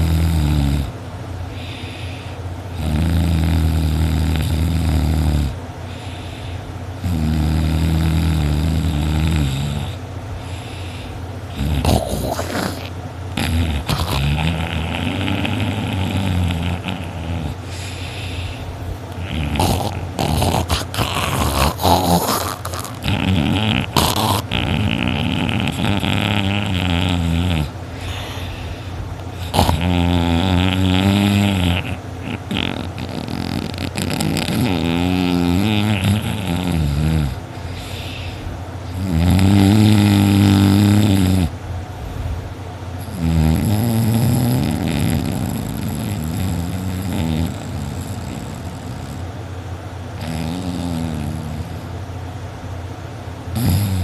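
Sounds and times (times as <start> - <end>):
person snoring loudly: 0.0 - 0.9, 1.6 - 41.5, 43.0 - 49.3, 50.2 - 51.9, 53.5 - 54.0.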